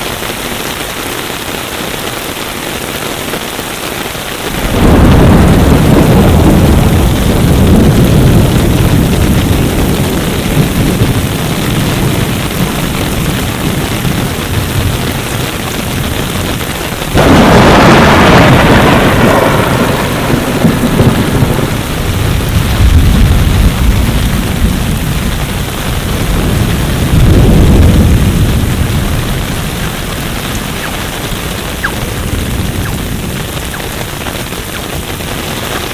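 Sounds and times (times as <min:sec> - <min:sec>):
heavy rain falling: 0:00.0 - 0:35.9
loud low rumble: 0:25.9 - 0:35.4.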